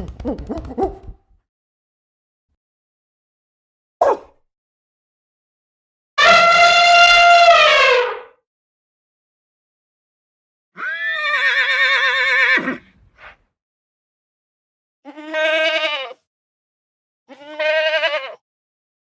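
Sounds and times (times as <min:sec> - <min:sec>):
sheep bleating: 0:06.2 - 0:07.7, 0:15.1 - 0:16.2, 0:17.3 - 0:18.4.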